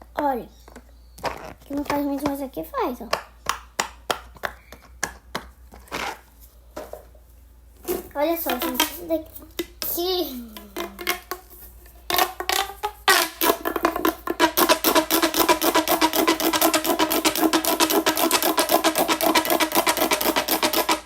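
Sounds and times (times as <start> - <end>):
fidget toy clicking: 14.4 - 21.0.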